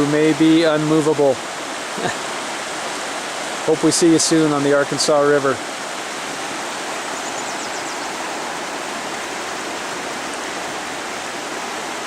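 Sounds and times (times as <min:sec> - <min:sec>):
fast-flowing river rushing: 0:00.0 - 0:12.0.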